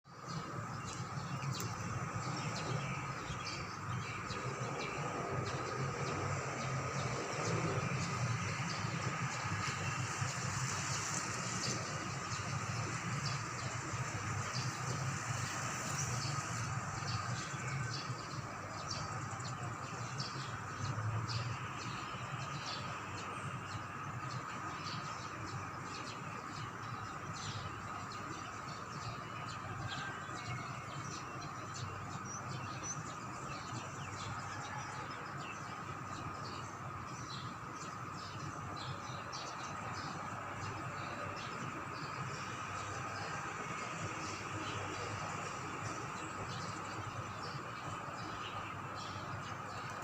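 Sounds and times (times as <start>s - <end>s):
thin steady whine: 0.1s - 32.2s
birds chirping: 0.1s - 50.0s
low steady drone: 0.1s - 50.0s
small birds chirping: 31.0s - 50.0s.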